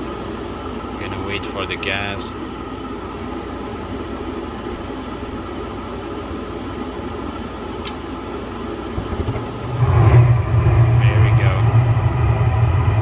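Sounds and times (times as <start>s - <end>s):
furnace fan motor running: 0.0s - 13.0s
gas burners rumbling: 7.1s - 13.0s.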